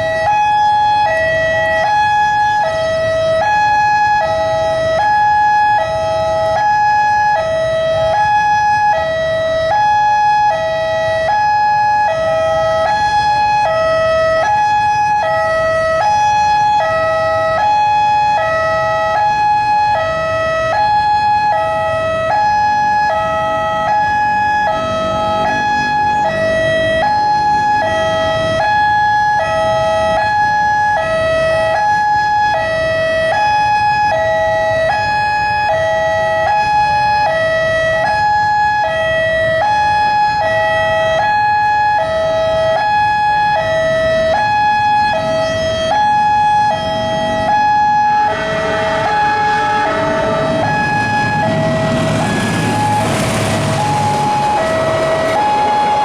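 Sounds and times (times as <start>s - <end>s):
level crossing two-tone alarm: 0.0s - 56.0s
road traffic rumbling: 0.0s - 56.0s
vehicle engine: 21.7s - 30.2s, 44.6s - 56.0s.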